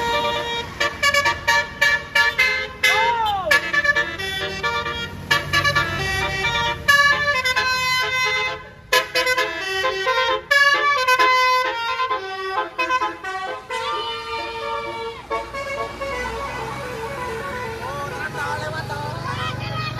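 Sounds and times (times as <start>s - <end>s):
multi-tone bus horn melody: 0.0s - 19.9s
low engine rumble: 12.2s - 19.9s.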